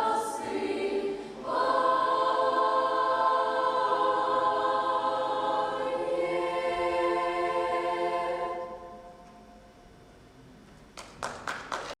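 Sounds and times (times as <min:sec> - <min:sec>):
choir singing held chord: 0:00.0 - 0:09.6.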